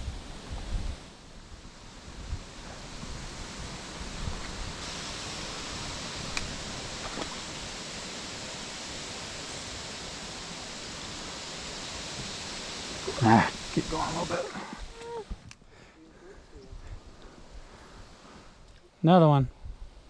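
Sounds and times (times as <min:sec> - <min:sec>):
stream water rushing: 0:02.0 - 0:15.3.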